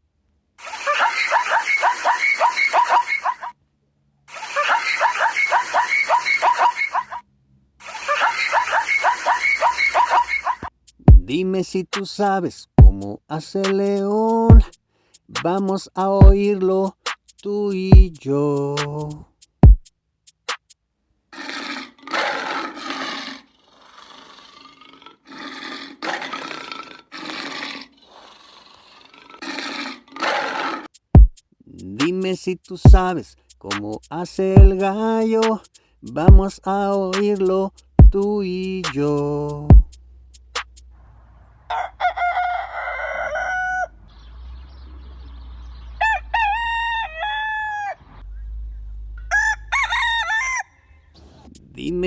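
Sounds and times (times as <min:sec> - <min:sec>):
rooster crowing: 0:00.6 - 0:03.5, 0:04.3 - 0:07.2, 0:07.8 - 0:10.7, 0:41.1 - 0:51.2
lion roaring: 0:21.3 - 0:30.9, 0:42.6 - 0:52.0.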